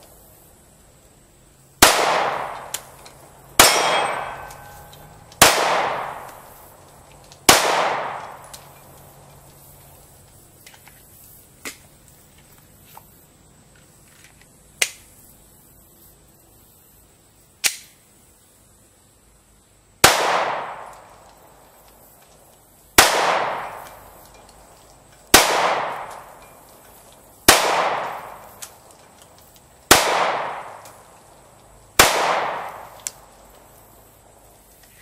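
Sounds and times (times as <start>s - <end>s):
pistol shots with echo: 1.8s - 2.9s, 3.6s - 6.4s, 7.4s - 8.5s, 20.0s - 21.0s, 23.0s - 23.9s, 25.3s - 26.4s, 27.5s - 28.5s, 29.9s - 30.8s, 32.0s - 33.0s.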